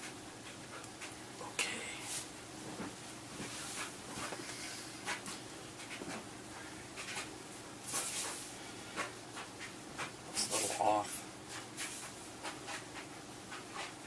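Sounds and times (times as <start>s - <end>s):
soft rustling: 1.8s - 6.2s.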